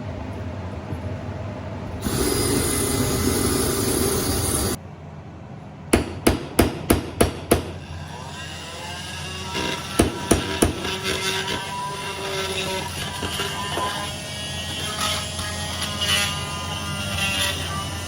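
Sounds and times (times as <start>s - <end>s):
small drill sanding metal: 2.0s - 4.8s, 7.8s - 18.0s.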